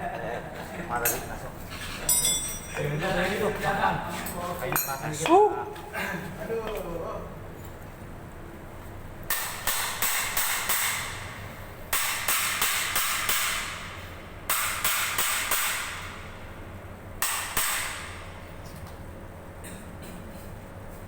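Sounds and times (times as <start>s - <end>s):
hammer striking metal motor: 2.1s - 2.8s, 9.3s - 11.2s, 11.9s - 16.3s, 17.2s - 18.2s.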